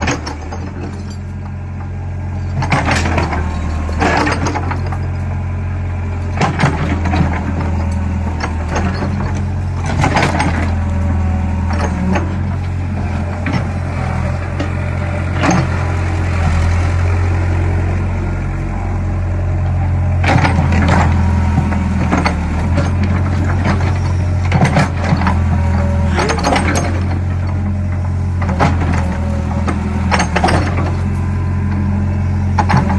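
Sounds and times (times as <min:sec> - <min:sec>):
diesel engine running: 0:00.0 - 0:32.9
machine knocks and clatters: 0:02.5 - 0:05.1, 0:06.3 - 0:16.6, 0:20.2 - 0:31.1, 0:32.6 - 0:32.9.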